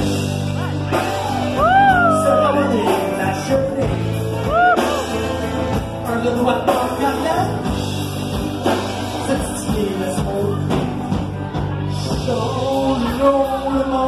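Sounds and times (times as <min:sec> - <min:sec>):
drums: 0:00.0 - 0:14.0
rock band playing: 0:00.0 - 0:14.0
person singing: 0:00.6 - 0:05.2, 0:09.1 - 0:14.0.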